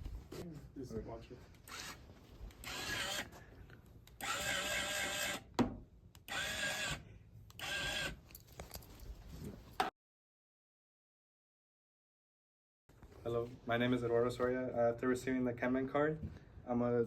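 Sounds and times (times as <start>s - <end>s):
small motor whining: 1.6s - 3.4s, 4.1s - 5.5s, 6.2s - 8.2s.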